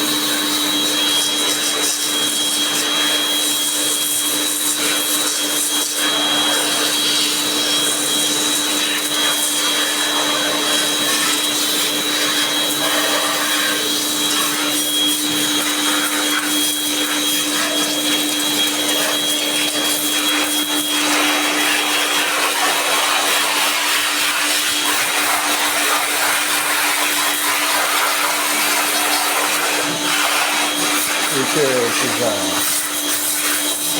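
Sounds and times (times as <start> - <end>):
cleaning machine motor whining: 28.0 - 33.9.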